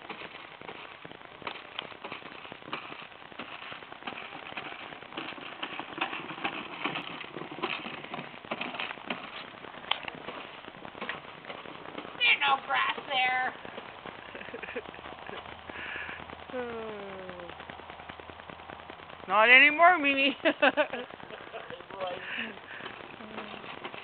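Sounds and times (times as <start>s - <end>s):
toy lawnmower clattering: 0.0s - 15.4s.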